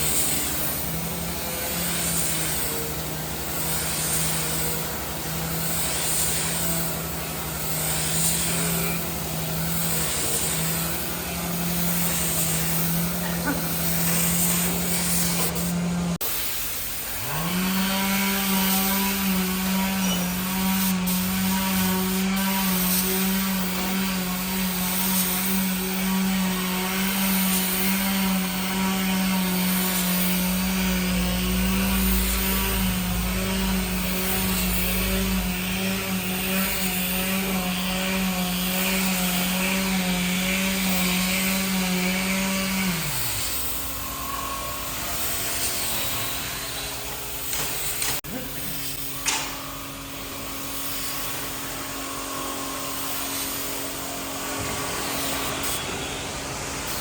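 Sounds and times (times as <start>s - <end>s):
power tool motor humming: 0.0s - 16.2s, 17.0s - 57.0s.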